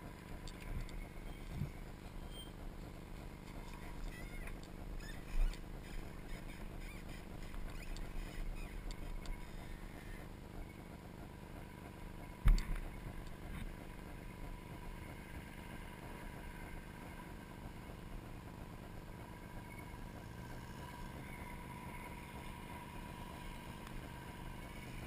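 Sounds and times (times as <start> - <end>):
vehicle engine running: 0.0 - 25.0.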